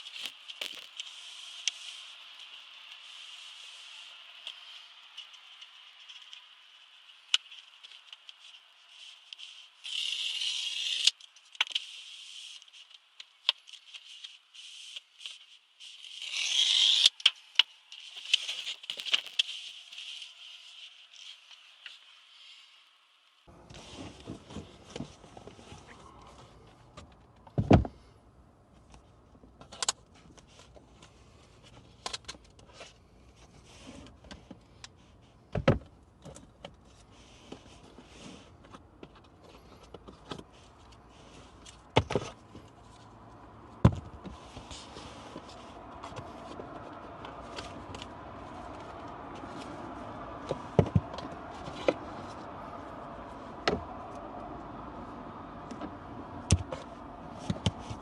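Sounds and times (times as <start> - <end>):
scraping and rustling: 0.0 - 1.0, 17.9 - 21.4.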